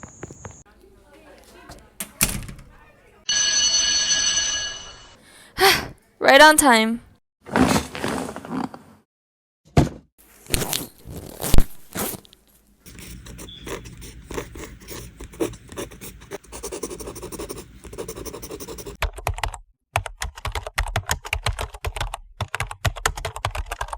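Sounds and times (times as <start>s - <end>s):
typing on keyboard: 15.3s - 23.9s.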